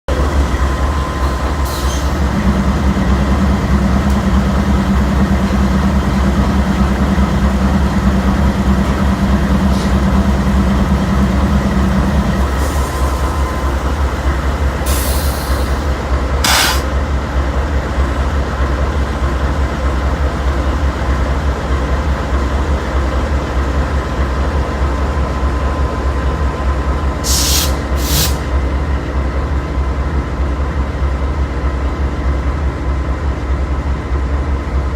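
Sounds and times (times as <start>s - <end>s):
heavy engine droning: 0.1s - 18.2s
short hisses: 14.9s - 17.0s, 27.3s - 28.5s.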